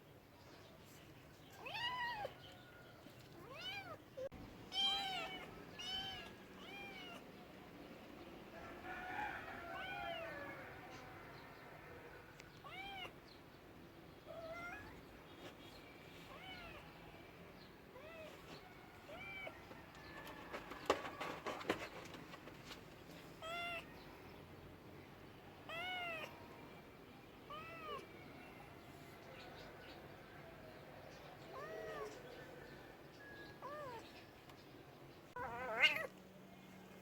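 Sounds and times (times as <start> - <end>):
cat meowing: 4.7 - 7.2, 12.6 - 13.1, 23.4 - 23.9, 25.7 - 26.3, 27.5 - 28.1, 31.5 - 32.2, 35.4 - 36.1.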